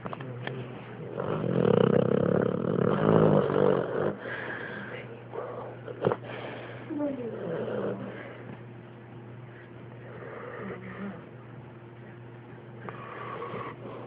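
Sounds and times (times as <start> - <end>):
dog snoring: 1.0 - 8.4, 10.0 - 11.4, 12.8 - 14.0
dog breathing: 1.0 - 8.6, 9.4 - 14.0.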